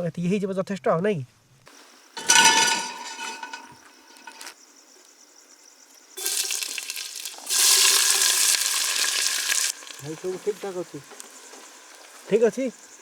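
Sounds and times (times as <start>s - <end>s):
food sizzling in hot oil: 6.2s - 13.0s.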